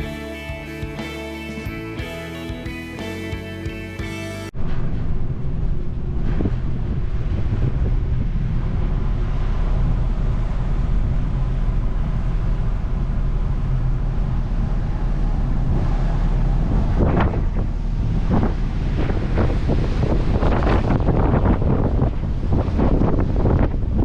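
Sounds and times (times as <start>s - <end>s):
ferry engine rumble: 0.0s - 24.0s
wind buffeting microphone: 4.5s - 24.0s.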